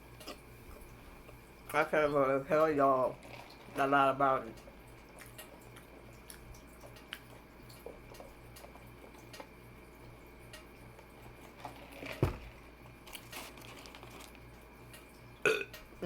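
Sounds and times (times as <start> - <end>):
person chewing food: 0.0 - 1.6, 4.6 - 15.6
thump: 12.2 - 12.5.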